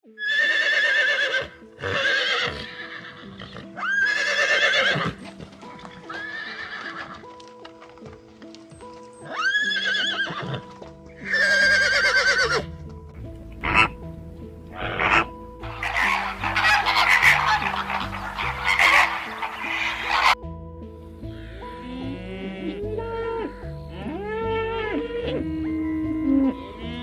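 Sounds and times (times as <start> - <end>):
background music with held notes: 0.0 - 27.0
horse whinnying: 0.1 - 7.3, 9.2 - 12.7, 14.7 - 20.4.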